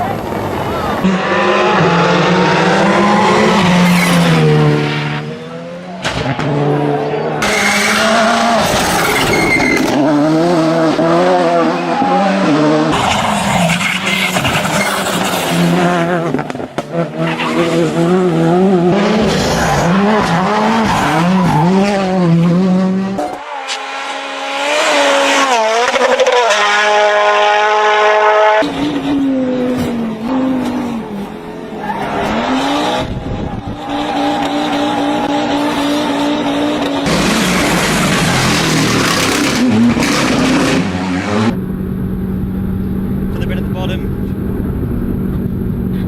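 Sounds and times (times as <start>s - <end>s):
rally car engines revving: 0.0s - 46.0s.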